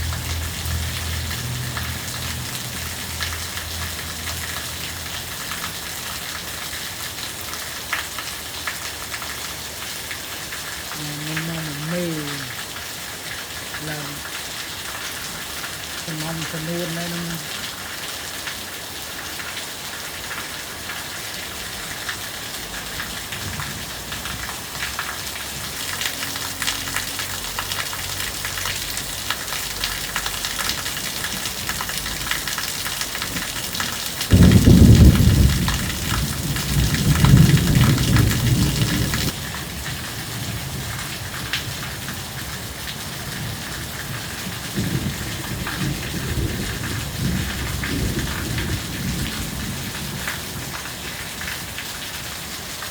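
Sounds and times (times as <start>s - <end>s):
heavy rain: 0.0s - 52.9s
thunder rumble: 34.3s - 39.4s, 44.5s - 50.3s.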